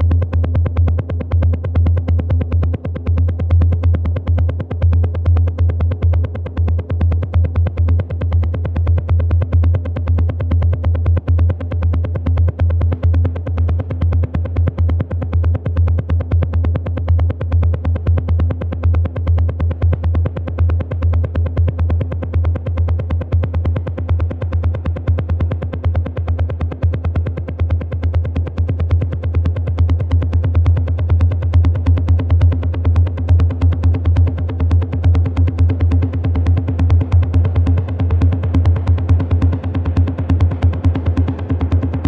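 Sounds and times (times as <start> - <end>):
fast hi-hat ticks: 31.5 - 42.0.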